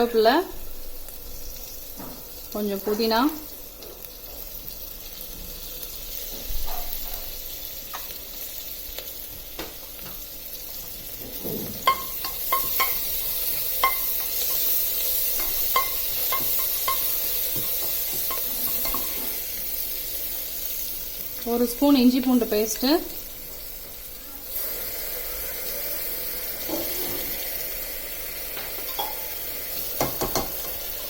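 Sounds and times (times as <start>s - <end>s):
onions sizzling in hot oil: 0.0s - 31.0s
metal spoon clinking on pot: 11.9s - 13.2s, 13.8s - 14.7s, 15.4s - 19.2s, 28.9s - 29.2s.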